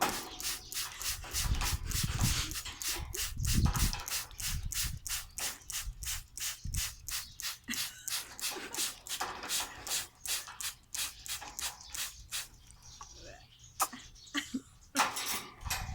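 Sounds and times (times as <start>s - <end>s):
water splashing rhythmically: 0.0s - 12.5s.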